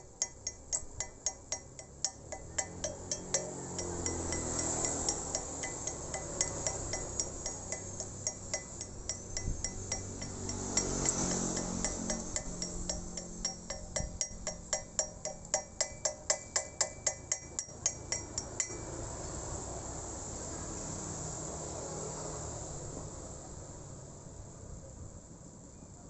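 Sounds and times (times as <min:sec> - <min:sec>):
ringing metallic taps: 0:00.0 - 0:19.2.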